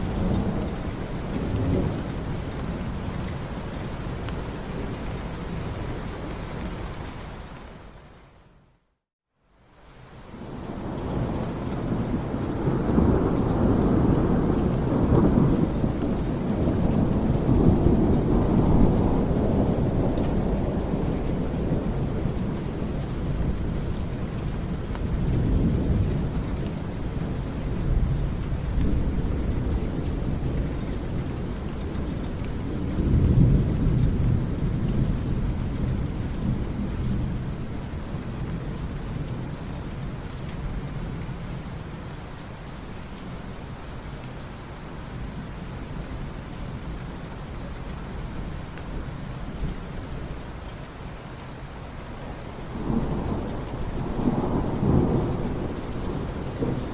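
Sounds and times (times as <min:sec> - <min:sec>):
steady rain: 0:00.0 - 0:56.9
rolling thunder: 0:10.4 - 0:37.6, 0:52.6 - 0:56.9.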